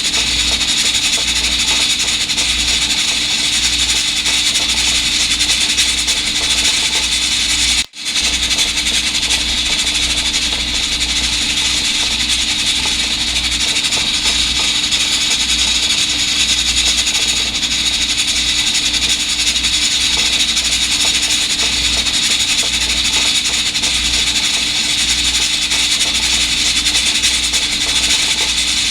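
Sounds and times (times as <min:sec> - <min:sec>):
rice cooker hissing: 0:00.0 - 0:28.9.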